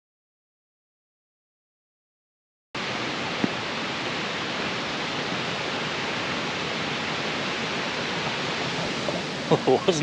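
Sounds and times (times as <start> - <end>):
waterfall rushing: 2.8 - 10.0.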